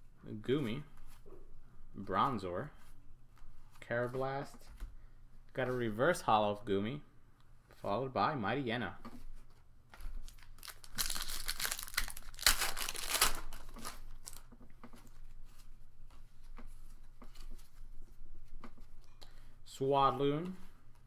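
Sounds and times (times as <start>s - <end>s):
light rustles and clicks of handling: 9.0s - 19.5s
foil wrapper tearing and crinkling: 10.2s - 14.5s.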